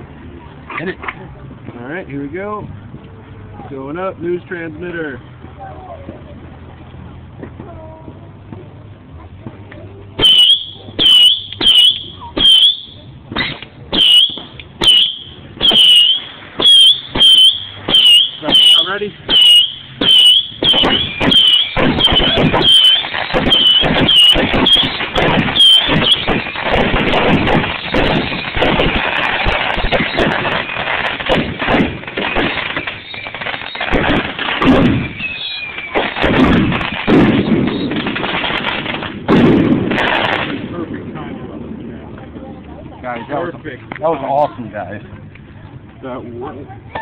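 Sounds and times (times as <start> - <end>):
firework whistling shots: 10.2 - 40.8.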